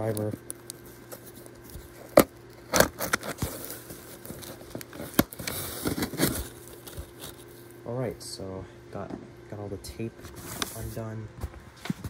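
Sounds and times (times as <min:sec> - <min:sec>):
screwdriver scraping packing tape: 0:00.0 - 0:07.5
tape tearing: 0:00.0 - 0:07.7.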